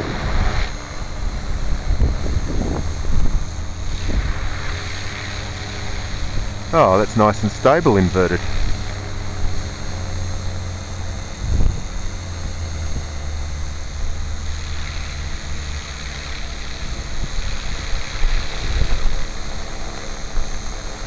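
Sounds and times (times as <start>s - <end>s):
model helicopter rotor drone: 0.0s - 21.0s.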